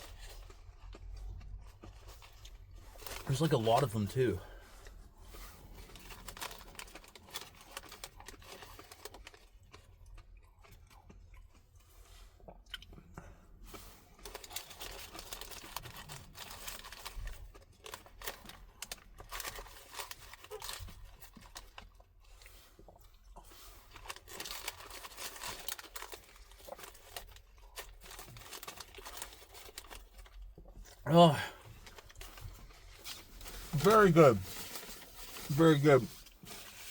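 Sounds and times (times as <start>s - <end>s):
person chewing and crunching food: 0.0s - 36.9s.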